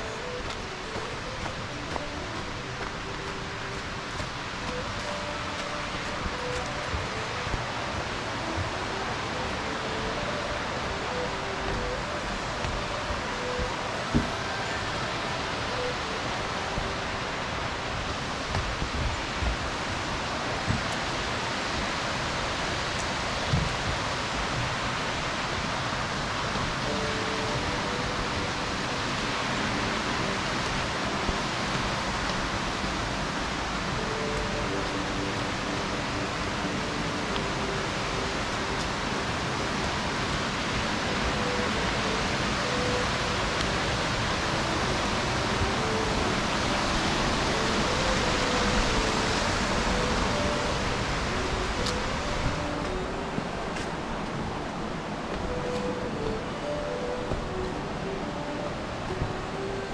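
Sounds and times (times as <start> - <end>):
waterfall roaring: 0.0 - 59.9.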